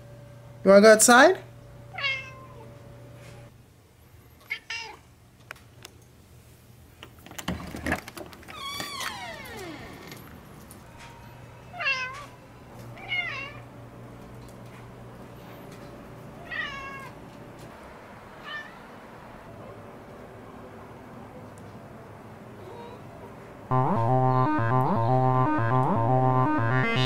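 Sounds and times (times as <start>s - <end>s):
cat meowing: 2.0s - 2.6s, 16.4s - 17.2s, 18.4s - 18.8s.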